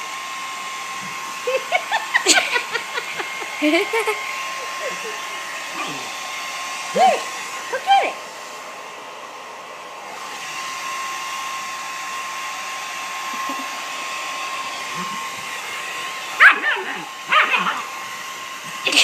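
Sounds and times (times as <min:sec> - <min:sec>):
hair dryer running: 0:00.0 - 0:19.0.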